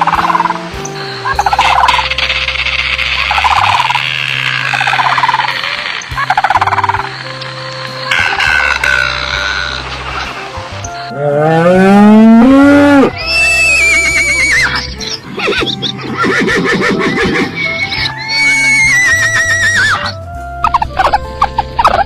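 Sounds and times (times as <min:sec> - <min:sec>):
background music: 0:00.0 - 0:22.0
low rising call: 0:00.0 - 0:22.0
horse whinnying: 0:15.4 - 0:20.1.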